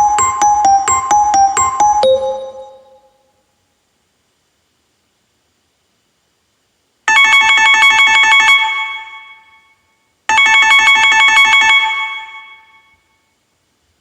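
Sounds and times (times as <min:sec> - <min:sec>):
phone ringtone: 0:00.0 - 0:03.1, 0:07.1 - 0:09.4, 0:10.3 - 0:12.9.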